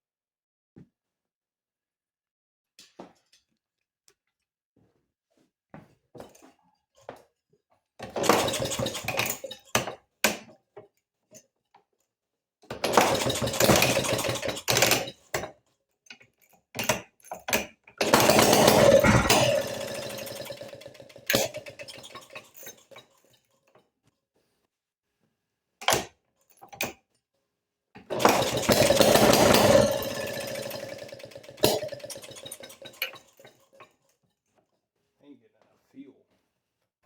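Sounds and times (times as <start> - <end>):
small engine starting: 8.0 - 9.5, 12.8 - 15.1, 18.0 - 23.1, 28.1 - 33.7.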